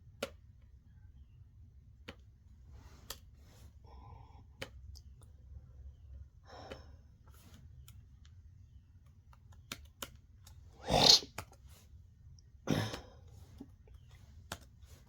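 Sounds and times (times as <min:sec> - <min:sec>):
breathy throat noises: 0:10.8 - 0:11.4, 0:12.7 - 0:13.7.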